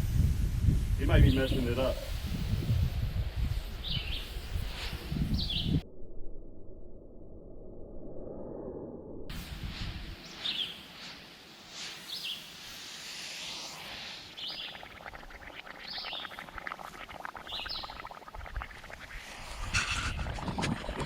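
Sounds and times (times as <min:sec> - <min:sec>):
outdoor background noise: 0:01.9 - 0:07.7, 0:09.3 - 0:21.0
bird chirping: 0:05.3 - 0:05.8, 0:10.2 - 0:10.9, 0:12.0 - 0:12.6, 0:14.4 - 0:15.1.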